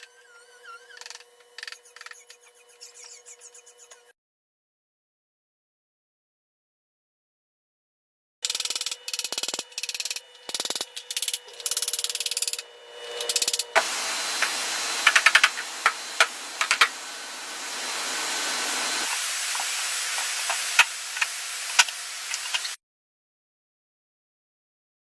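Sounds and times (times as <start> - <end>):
buzzing tool: 8.4 - 22.7
sharp clicks and knocks: 13.2 - 17.0.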